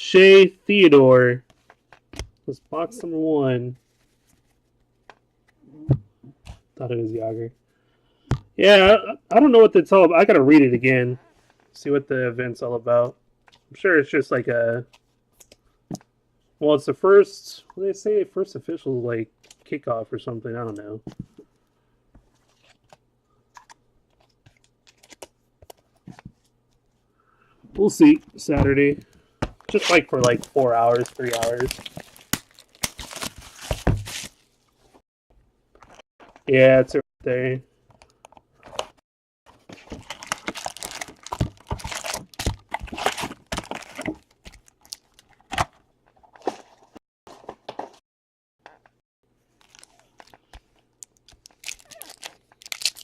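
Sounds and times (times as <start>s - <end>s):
trading cards being handled: 28.0s - 34.4s
wrappers crinkling and tearing: 29.7s - 34.6s, 39.7s - 45.6s, 49.6s - 53.0s.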